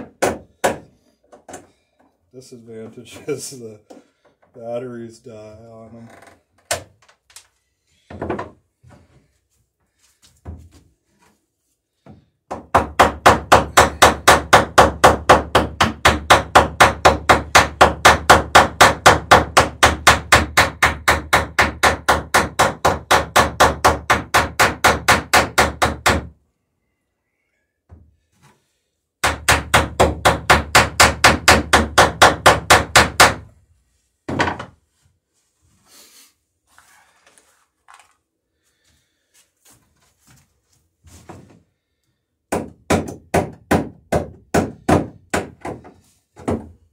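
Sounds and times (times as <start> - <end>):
knocks: 34.3 - 34.8.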